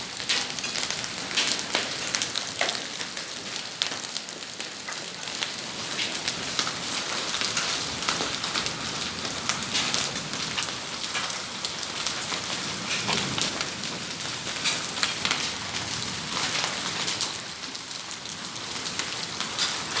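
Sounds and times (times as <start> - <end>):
raindrops ticking on hard surfaces: 0.0 - 20.0
heavy rain hissing: 6.8 - 18.6.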